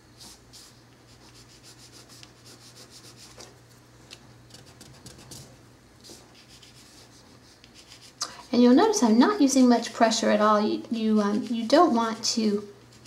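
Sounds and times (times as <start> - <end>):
pencil scratching on paper: 0.2 - 3.4, 4.5 - 8.2.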